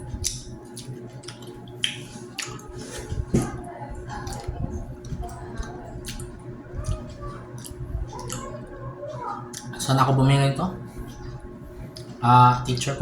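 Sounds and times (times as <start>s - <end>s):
wet squishy chewing: 0.0s - 13.0s
mouth clicks and smacks: 0.2s - 2.8s.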